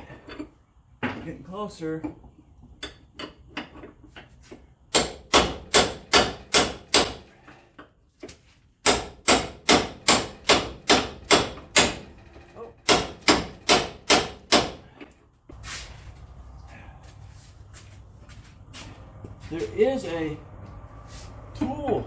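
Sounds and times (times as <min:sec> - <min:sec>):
hammer striking steel: 0:04.9 - 0:07.3, 0:08.8 - 0:12.2, 0:12.8 - 0:14.8.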